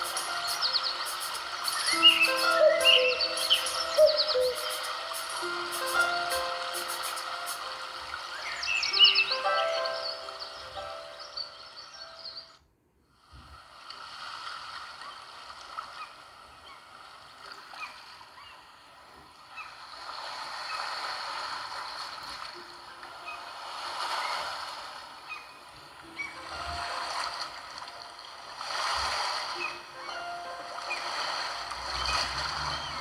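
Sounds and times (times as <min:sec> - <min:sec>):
water-like rushing and gurgling ringtone: 0:00.0 - 0:12.5, 0:19.5 - 0:33.0.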